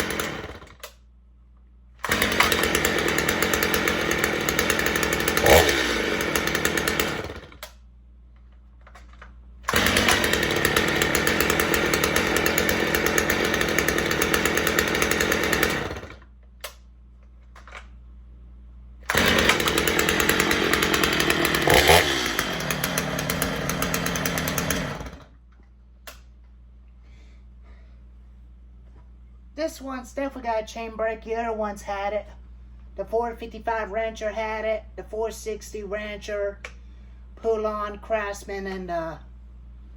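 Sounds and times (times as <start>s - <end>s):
gas chainsaw running: 0.0s - 0.8s, 2.0s - 7.7s, 9.7s - 16.2s, 19.1s - 25.3s.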